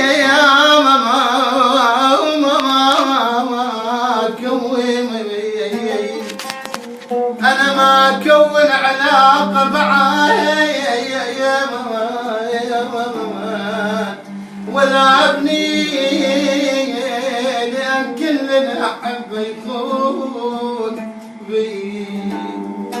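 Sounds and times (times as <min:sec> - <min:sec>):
man singing ornamented melody: 0:00.0 - 0:06.6, 0:07.4 - 0:23.0
singer breathing: 0:14.2 - 0:14.7.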